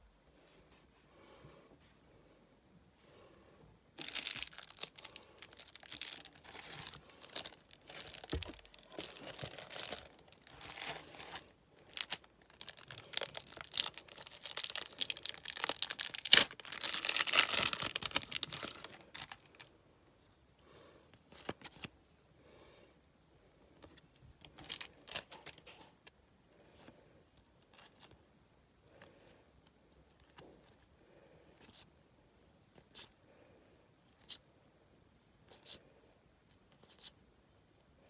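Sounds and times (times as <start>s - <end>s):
wrapping crinkling: 4.0s - 19.7s, 24.4s - 25.8s.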